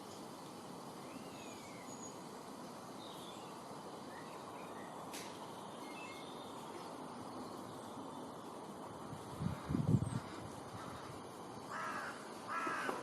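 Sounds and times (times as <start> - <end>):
steady background noise: 0.0 - 13.0
faint bird calls: 9.4 - 13.0.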